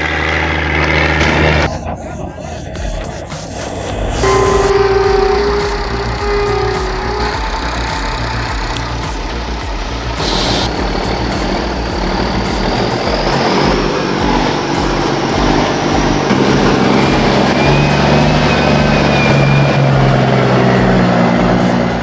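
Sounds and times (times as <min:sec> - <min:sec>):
truck diesel engine droning: 0:00.0 - 0:22.0.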